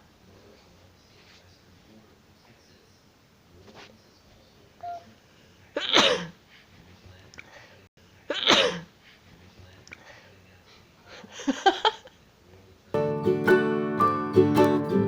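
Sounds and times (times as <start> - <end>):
woman sneezing: 8.3 - 8.9
plucked-string music: 13.0 - 15.0.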